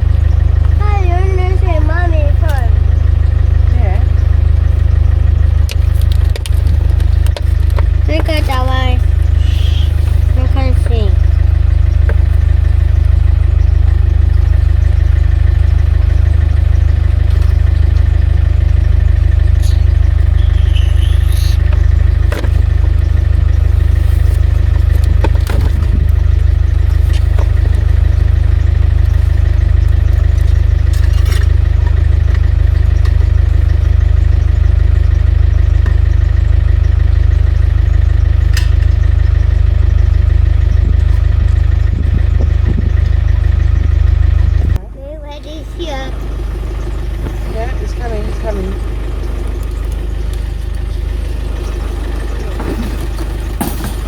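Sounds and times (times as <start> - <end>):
car engine and road noise drone: 0.0 - 54.0
rising squeak: 19.5 - 22.2.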